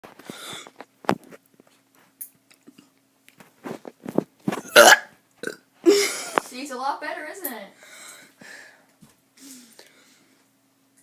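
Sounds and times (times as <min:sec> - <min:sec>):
child burping: 0:04.6 - 0:06.4.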